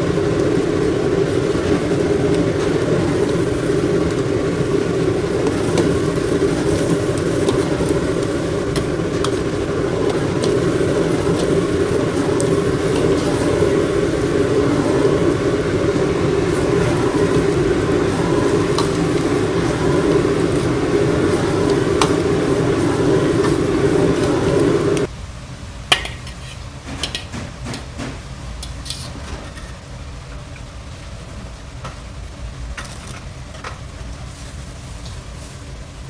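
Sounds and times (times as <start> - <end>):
loud steady rumbling: 0.0 - 25.8.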